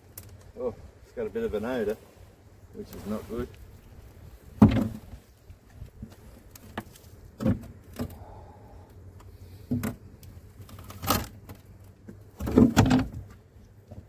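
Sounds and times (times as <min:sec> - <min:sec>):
plastic bin knocks and thumps: 0:04.6 - 0:05.1.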